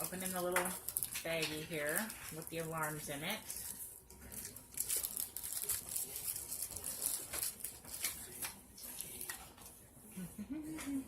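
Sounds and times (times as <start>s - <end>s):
plastic bag crinkling: 0.0s - 9.3s.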